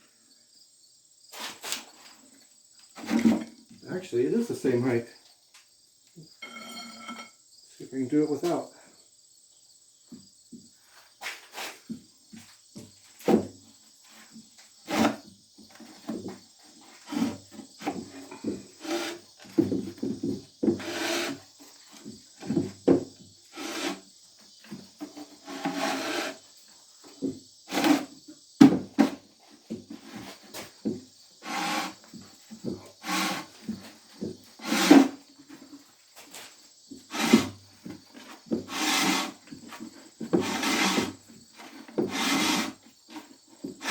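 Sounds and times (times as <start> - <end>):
crickets chirping: 0.0 - 43.9
wooden pulley clunking and scraping: 3.0 - 3.6, 13.2 - 24.0, 24.6 - 26.4, 27.1 - 43.9.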